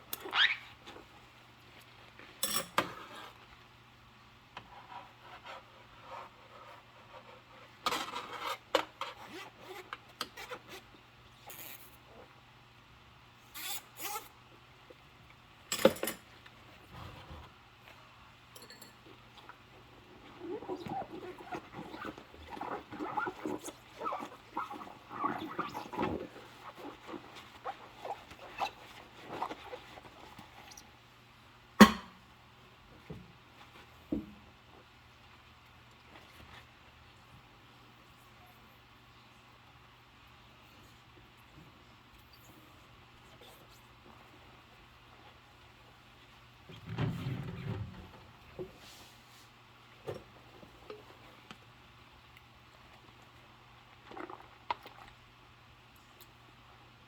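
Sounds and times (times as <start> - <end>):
rubber gloves squeaking on dishes: 0.2 - 1.1, 11.5 - 12.1, 13.5 - 14.3, 19.8 - 31.0
dishes clinking: 18.6 - 19.0.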